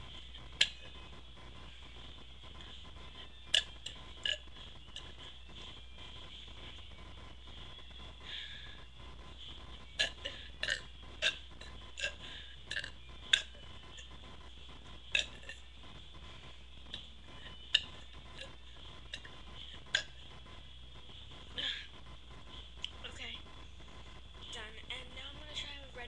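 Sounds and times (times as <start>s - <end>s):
woman burping: 10.0s - 11.4s, 12.0s - 13.6s, 15.1s - 15.6s.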